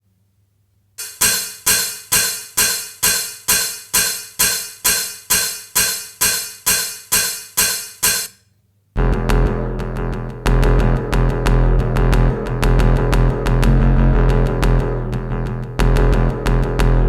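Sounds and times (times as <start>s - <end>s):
electronic beat: 13.7s - 14.8s
cymbal-like percussion hits: 13.7s - 14.9s.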